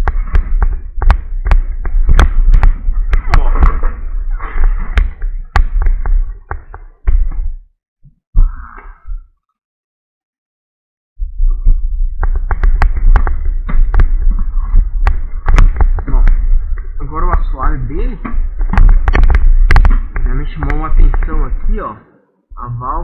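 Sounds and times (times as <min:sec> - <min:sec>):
sharp knocks and clicks: 0:00.0 - 0:07.5, 0:11.7 - 0:21.8
vinyl rustling: 0:00.0 - 0:07.5.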